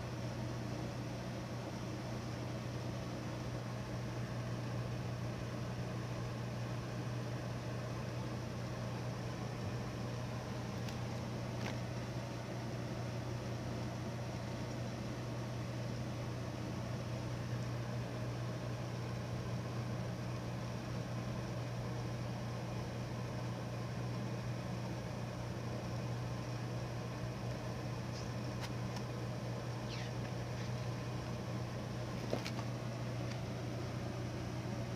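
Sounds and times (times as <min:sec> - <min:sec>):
faint high squeak: 0:29.9 - 0:30.9.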